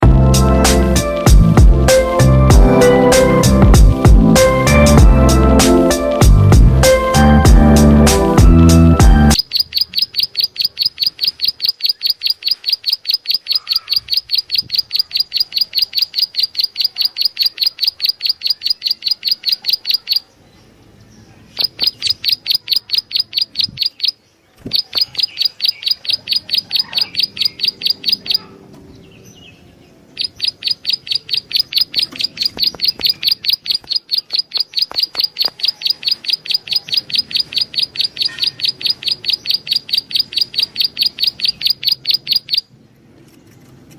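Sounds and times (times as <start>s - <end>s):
bird calling with sharp chips: 9.3s - 20.8s, 21.4s - 43.7s.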